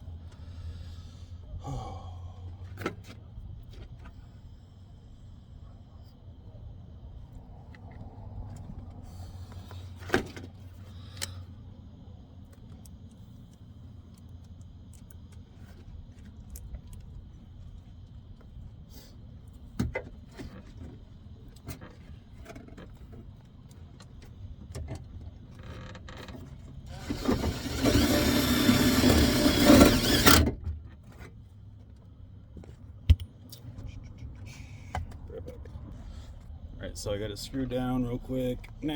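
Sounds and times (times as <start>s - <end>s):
power drill driving screw: 26.9s - 30.5s.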